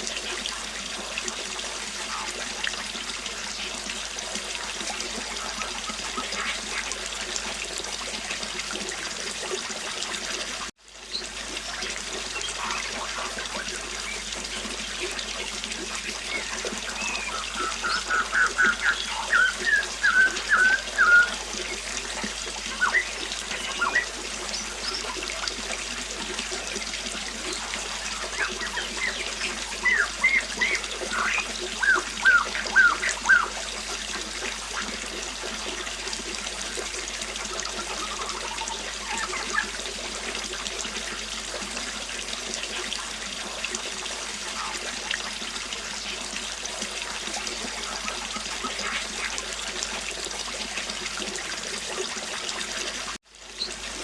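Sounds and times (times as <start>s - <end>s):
river water flowing: 0.0s - 54.0s
songbird chirping: 16.2s - 25.2s, 28.0s - 33.6s.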